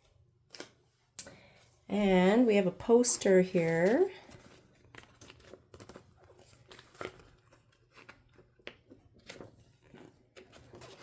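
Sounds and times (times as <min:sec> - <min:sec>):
paper and card rustling: 0:03.3 - 0:11.0.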